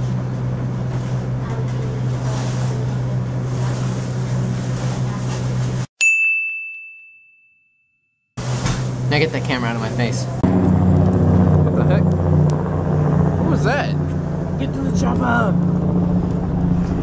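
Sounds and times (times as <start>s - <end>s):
bell-like ding: 6.0s - 8.3s.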